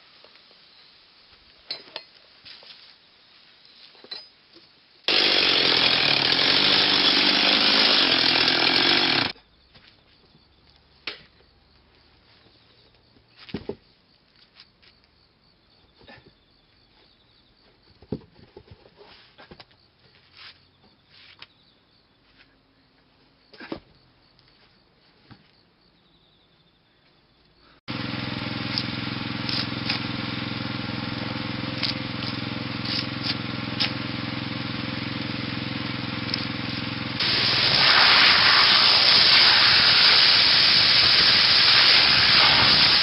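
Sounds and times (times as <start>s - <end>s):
power saw running: 5.1s - 9.4s, 27.9s - 43.0s.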